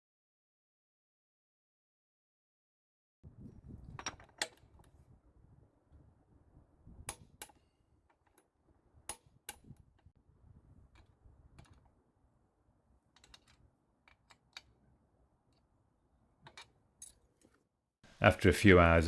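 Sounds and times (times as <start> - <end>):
sharp clicks and light knocks: 13.1 - 14.8.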